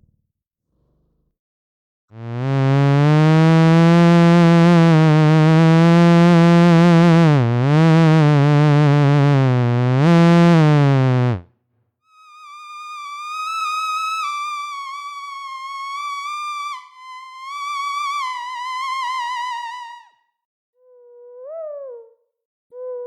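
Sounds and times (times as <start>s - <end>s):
low buzzy synth tone: 2.1s - 11.5s
higher thinner tone: 2.2s - 11.4s.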